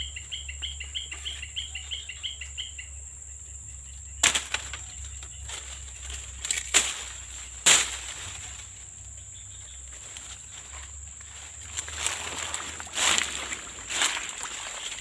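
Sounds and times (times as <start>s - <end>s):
splashes in muddy water: 11.9s - 15.0s.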